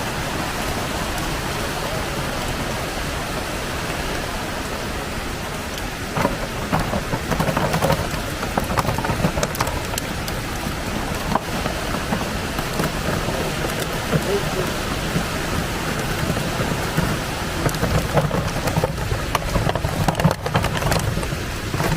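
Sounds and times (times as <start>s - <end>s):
waterfall rushing: 0.0s - 21.9s
sharp clicks and knocks: 5.7s - 21.9s.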